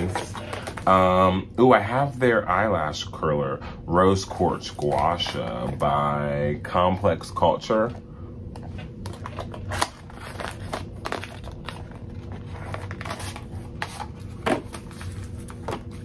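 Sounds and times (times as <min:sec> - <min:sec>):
packaging rustling and crinkling: 0:09.0 - 0:16.0.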